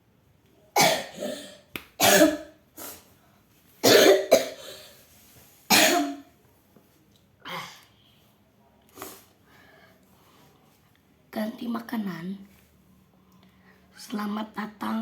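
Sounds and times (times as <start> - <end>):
person coughing: 0.8 - 2.5, 3.8 - 4.9, 5.7 - 6.2.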